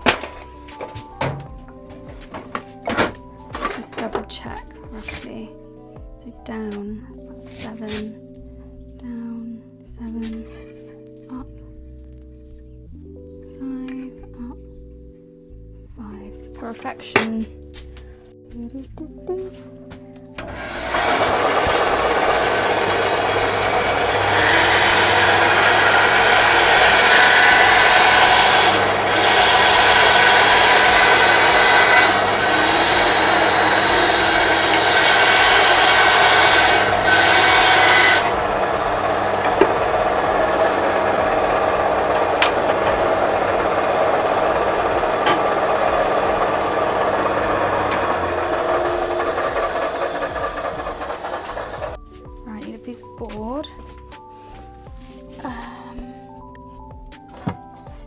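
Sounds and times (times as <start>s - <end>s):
power tool motor hum: 20.4s - 52.0s
power tool rasping wood: 20.4s - 52.0s.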